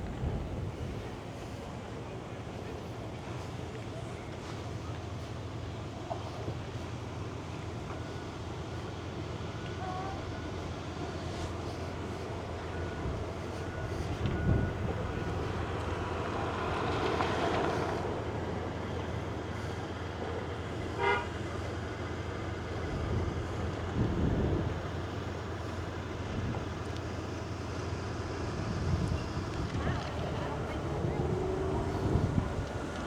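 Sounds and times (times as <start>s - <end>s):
vehicle and road rumble: 0.0s - 33.0s
car horn toot: 21.0s - 21.3s
vehicle passing: 29.4s - 33.0s.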